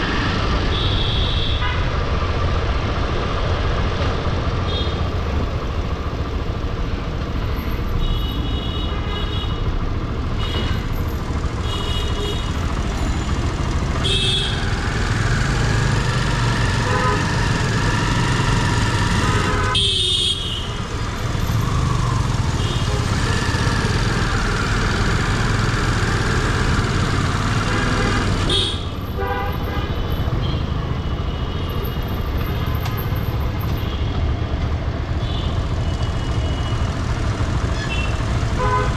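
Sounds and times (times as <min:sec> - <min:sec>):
vehicle engines running: 0:00.0 - 0:38.9
car horns tooting: 0:13.8 - 0:20.8, 0:25.4 - 0:30.7.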